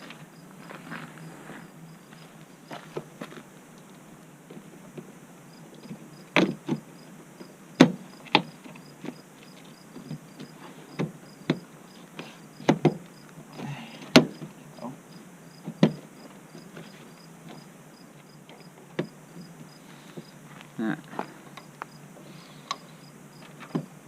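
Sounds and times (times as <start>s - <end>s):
crickets chirping: 0.0s - 24.0s.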